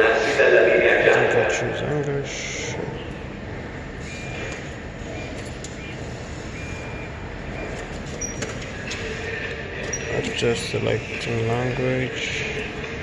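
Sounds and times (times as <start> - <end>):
railway station rumble: 0.0 - 13.0
short high-pitched beeps: 4.0 - 8.4.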